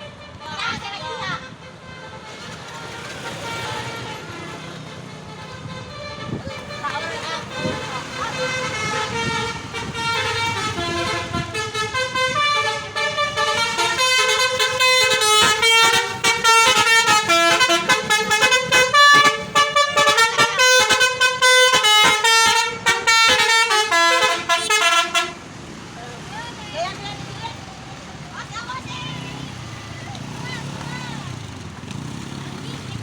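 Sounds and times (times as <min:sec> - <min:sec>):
multi-tone bus horn playing a tune: 0:00.0 - 0:00.5, 0:01.2 - 0:25.5.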